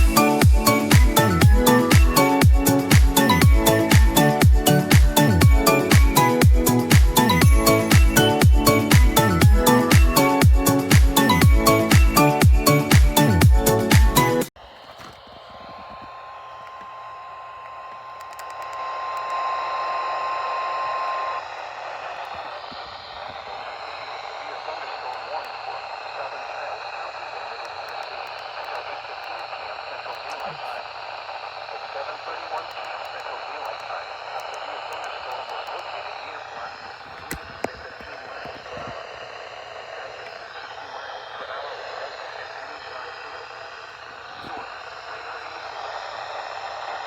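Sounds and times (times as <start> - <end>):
sharp clicks: 17.6 - 19.4
radio static: 18.0 - 47.0.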